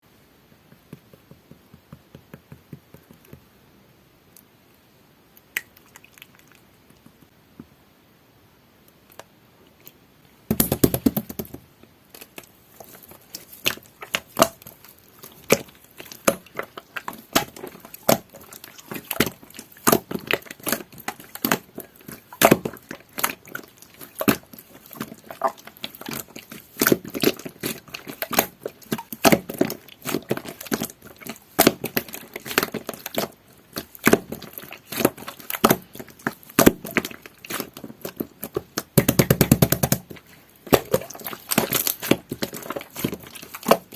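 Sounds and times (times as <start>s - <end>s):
slime squelch: 12.1s - 43.9s
slime clicking and popping: 12.2s - 43.9s.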